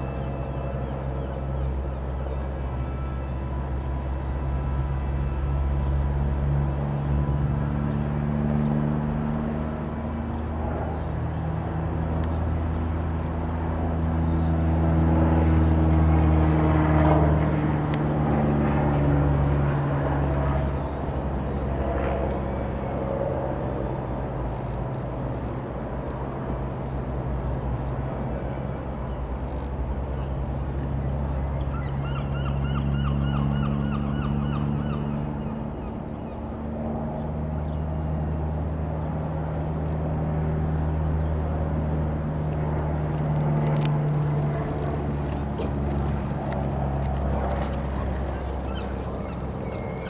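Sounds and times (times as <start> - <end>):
light aircraft engine droning: 0.0 - 50.0.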